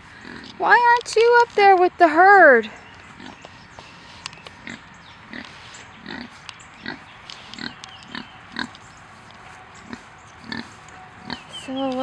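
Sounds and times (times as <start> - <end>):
pig grunting: 4.6 - 7.0, 9.8 - 11.5.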